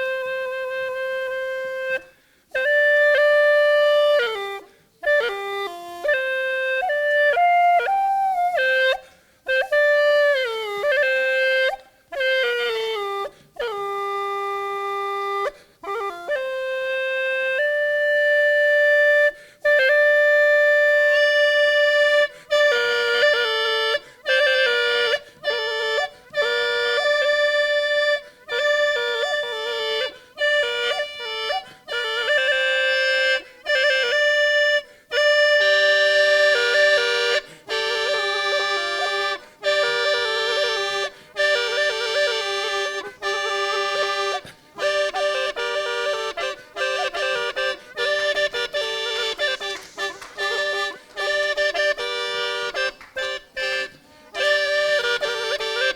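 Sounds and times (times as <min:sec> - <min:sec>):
gourd flute melody over drone: 0:00.0 - 0:55.9.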